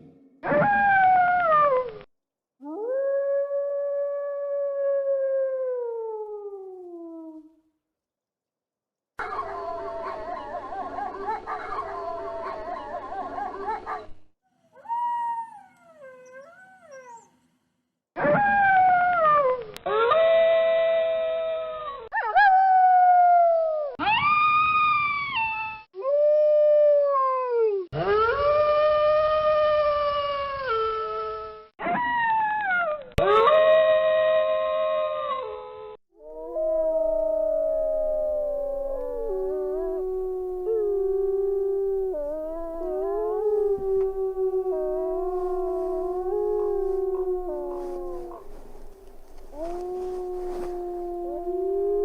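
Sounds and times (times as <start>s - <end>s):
wolves howling: 9.2s - 14.1s, 36.2s - 52.0s
wolf yips: 24.0s - 25.8s.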